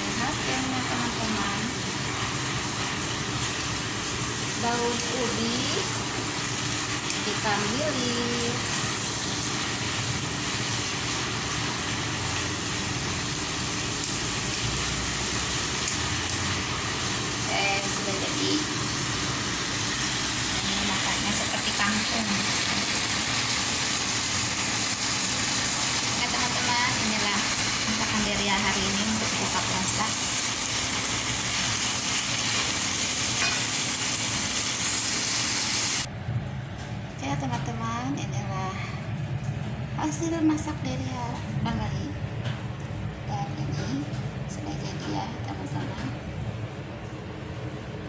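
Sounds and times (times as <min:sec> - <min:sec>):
food sizzling in a pan: 0:00.0 - 0:36.1.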